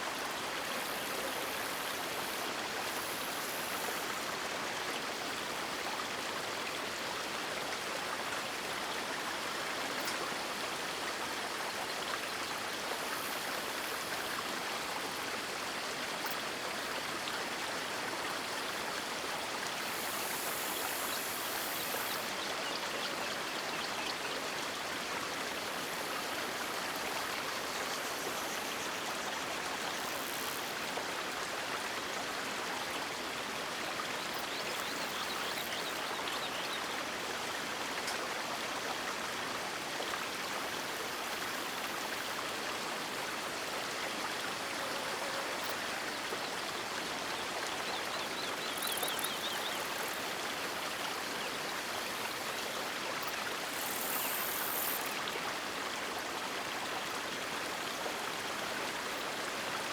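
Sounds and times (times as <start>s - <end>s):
river water flowing: 0.0s - 59.9s.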